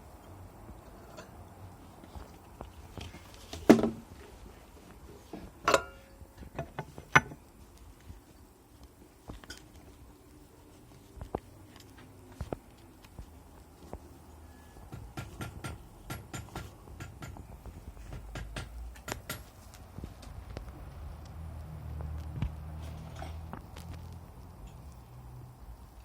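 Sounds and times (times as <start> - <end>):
tools and parts clattering: 5.6 - 7.4.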